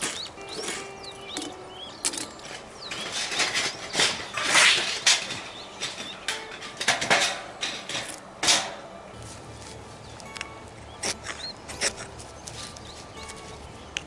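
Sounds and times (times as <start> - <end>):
crunching and rustling: 0.0 - 14.0.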